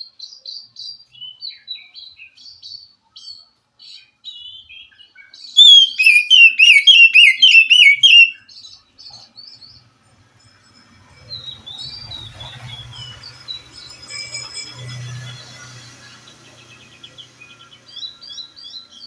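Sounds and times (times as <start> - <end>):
bird singing whistled notes: 4.4 - 8.7.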